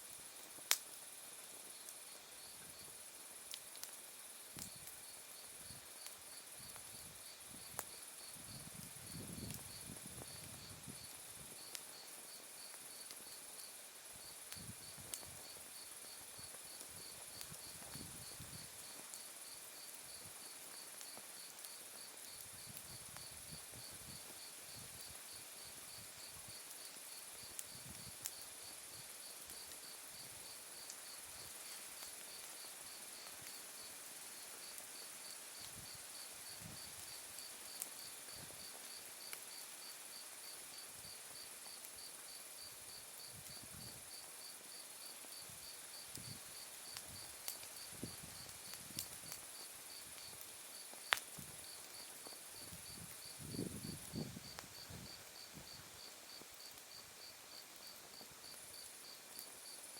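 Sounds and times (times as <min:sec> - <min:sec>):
fire crackling pops: 0:00.0 - 0:59.9.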